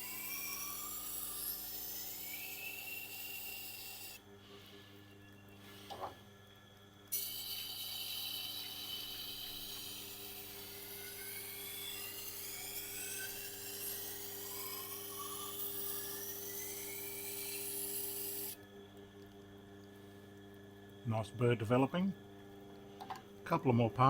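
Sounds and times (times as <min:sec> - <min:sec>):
knife grinding on sharpener wheel: 0:00.0 - 0:04.2, 0:07.1 - 0:18.6
sharpener motor hum: 0:00.0 - 0:04.8, 0:07.1 - 0:18.8.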